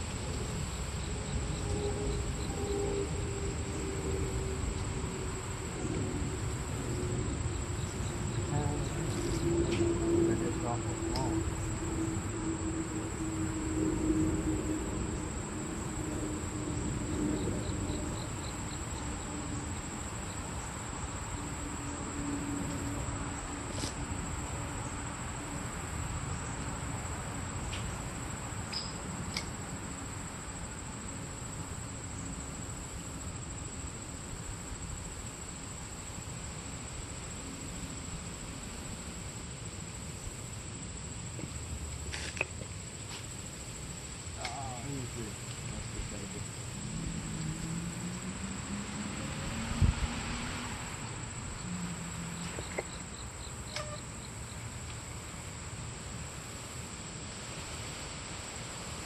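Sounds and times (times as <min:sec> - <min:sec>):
faint low drone: 0:00.0 - 0:19.8
insects chirring: 0:00.0 - 0:59.0
low rushing noise: 0:43.7 - 0:52.5.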